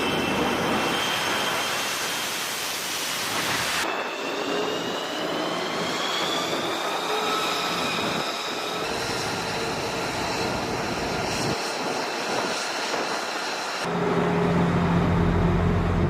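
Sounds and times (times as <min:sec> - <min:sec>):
jet turbine whine: 0:00.0 - 0:16.0
loud engine rush: 0:13.8 - 0:16.0.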